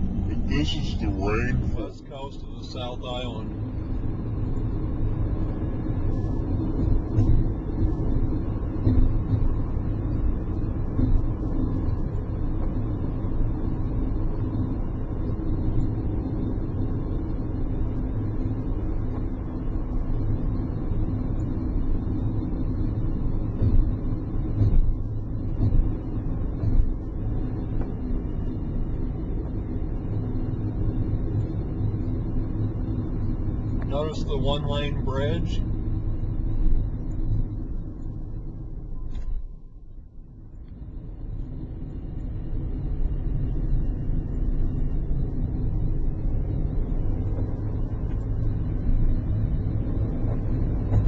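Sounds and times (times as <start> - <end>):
car engine and tyre rumble: 0.0 - 51.0.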